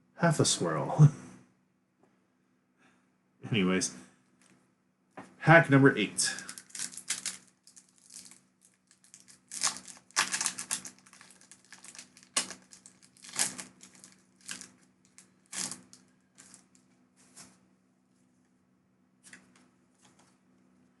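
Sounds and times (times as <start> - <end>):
foil wrapper crinkling and tearing: 6.3 - 16.8.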